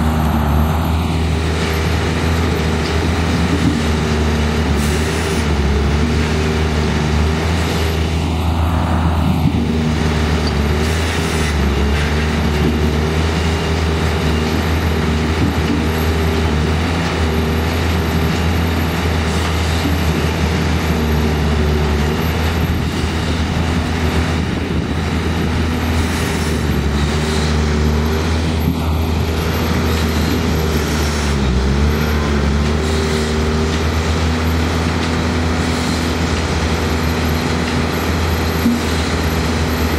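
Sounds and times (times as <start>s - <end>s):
machine engines droning: 0.0s - 39.9s.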